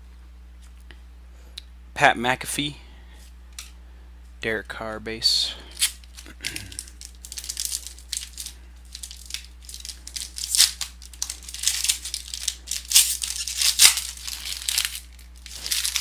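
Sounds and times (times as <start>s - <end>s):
trading cards rustling: 5.6s - 16.0s.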